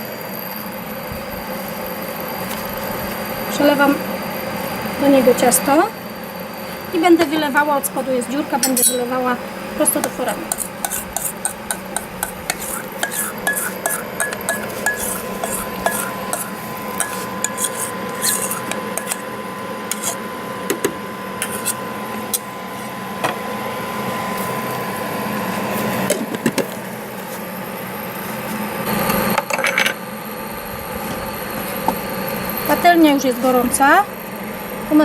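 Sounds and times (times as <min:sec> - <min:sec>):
utensil scraping and clinking in bowl: 0:08.6 - 0:09.2, 0:09.8 - 0:20.8, 0:21.4 - 0:22.9.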